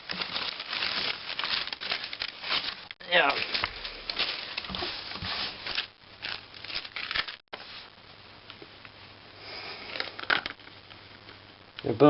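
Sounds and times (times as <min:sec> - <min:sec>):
packaging rustling and crinkling: 0:00.0 - 0:07.9, 0:09.8 - 0:11.4.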